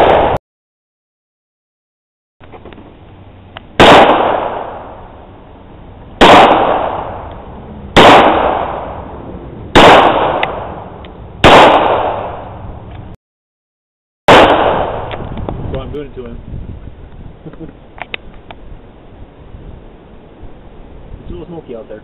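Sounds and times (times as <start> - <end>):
gunshots with echo: 0.0 - 0.4, 3.8 - 5.0, 6.2 - 7.2, 8.0 - 9.0, 9.7 - 10.8, 11.4 - 12.5, 14.3 - 15.1.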